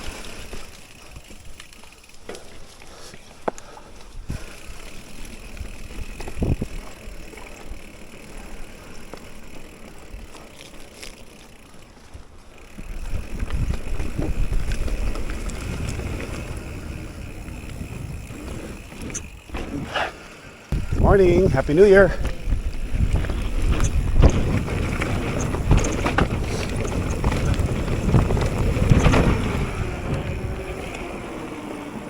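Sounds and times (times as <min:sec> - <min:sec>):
bike tyres on dirt trail: 0:00.0 - 0:32.0
wind rumble on microphone: 0:05.6 - 0:06.9, 0:13.0 - 0:19.9, 0:20.7 - 0:31.6
small clicks and rattles: 0:21.1 - 0:31.2.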